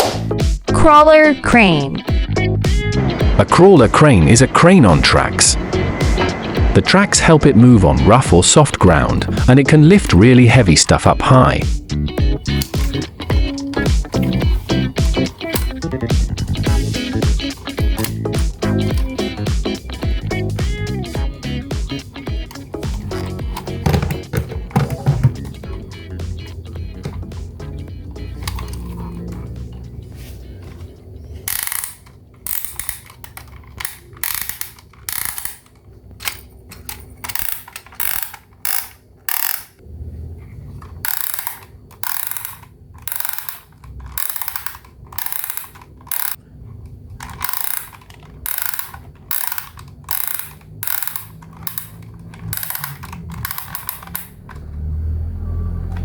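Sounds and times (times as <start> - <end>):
plastic toy mechanism ratcheting: 12.6 - 15.8, 16.5 - 19.2, 28.4 - 29.3, 31.5 - 39.8, 40.9 - 46.4, 47.1 - 54.7.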